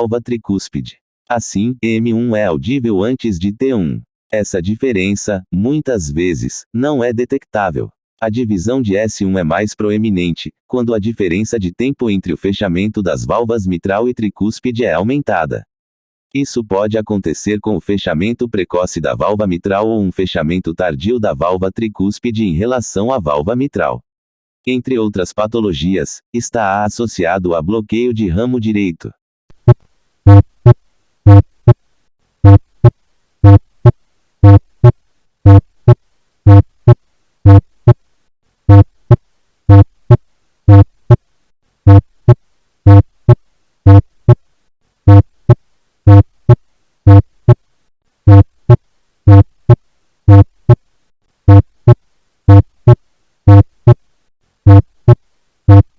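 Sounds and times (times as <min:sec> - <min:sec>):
heartbeat lub-dub: 0:29.6 - 0:31.7, 0:32.4 - 0:33.6, 0:34.4 - 0:35.6, 0:36.5 - 0:38.0, 0:38.7 - 0:39.9, 0:40.7 - 0:41.2, 0:43.9 - 0:44.4, 0:47.1 - 0:47.6, 0:50.3 - 0:50.8, 0:52.5 - 0:54.0, 0:54.7 - 0:55.9.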